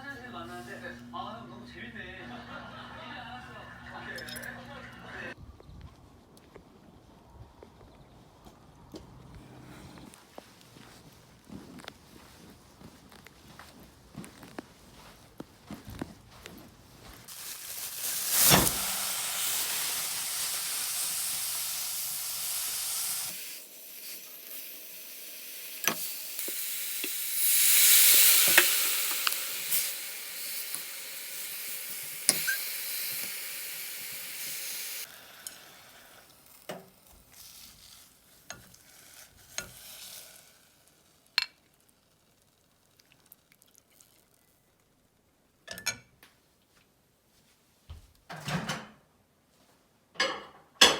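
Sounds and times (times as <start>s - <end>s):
food sizzling in frying pan: 17.3s - 41.4s.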